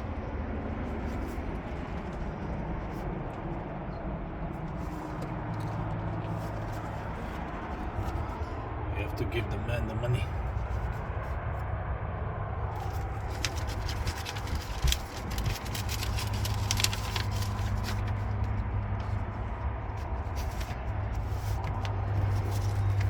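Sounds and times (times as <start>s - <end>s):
vehicle engine idling: 0.0s - 23.0s
rustling: 4.6s - 8.6s, 12.7s - 23.0s.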